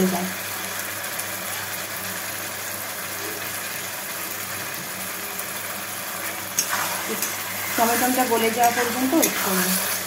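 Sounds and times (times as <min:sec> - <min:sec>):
food sizzling in a frying pan: 0:00.0 - 0:10.0.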